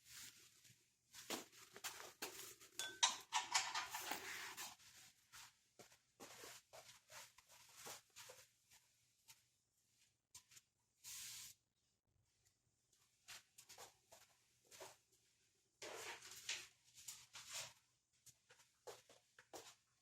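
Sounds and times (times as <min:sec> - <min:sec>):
rustling and scraping: 0:00.0 - 0:08.5
tools clicking and knocking: 0:02.8 - 0:04.3.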